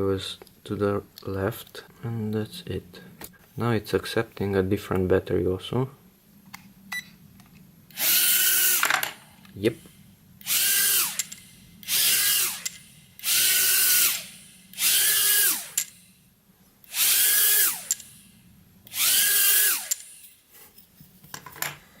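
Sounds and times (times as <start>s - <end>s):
drone motors whining: 7.9s - 8.9s, 10.4s - 16.1s, 16.8s - 20.4s.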